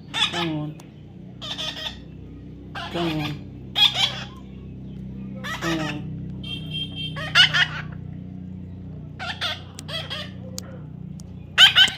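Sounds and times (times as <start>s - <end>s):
baby parrot calling: 0.0s - 4.6s, 5.3s - 8.1s, 9.2s - 10.8s, 11.6s - 11.9s
steady low hum: 0.0s - 11.9s.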